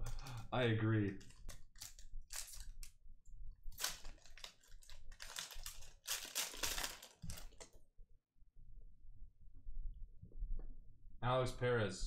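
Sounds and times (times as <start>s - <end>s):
trading cards shuffling: 1.1s - 2.9s, 3.7s - 7.8s.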